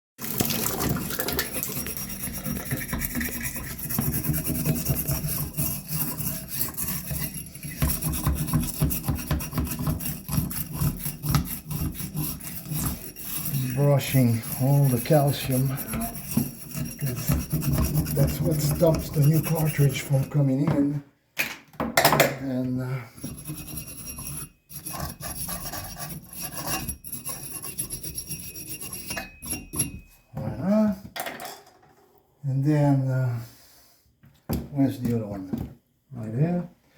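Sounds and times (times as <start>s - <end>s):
scraping inside shower valve: 0.3s - 20.4s, 23.2s - 30.0s.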